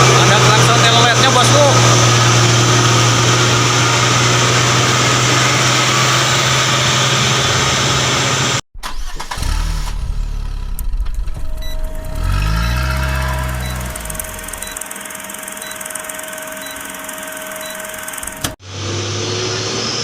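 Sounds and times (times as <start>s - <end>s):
truck diesel engine revving: 0.0s - 14.8s
heavy diesel engines running: 0.0s - 20.0s.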